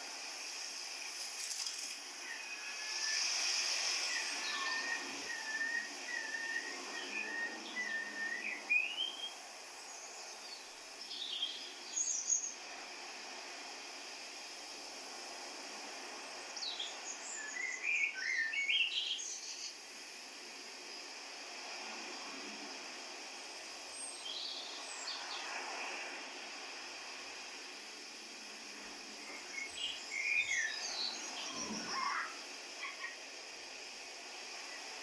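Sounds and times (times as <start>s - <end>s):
steady background hiss: 0.0s - 35.0s
birds chirping and whistling: 4.1s - 9.4s, 29.3s - 32.3s.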